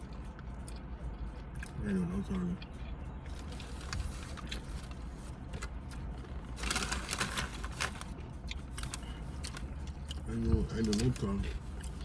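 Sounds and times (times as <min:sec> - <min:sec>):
steady low rumble: 0:00.0 - 0:12.0
rustling scrape: 0:06.4 - 0:08.1
small eating clicks: 0:08.2 - 0:12.0.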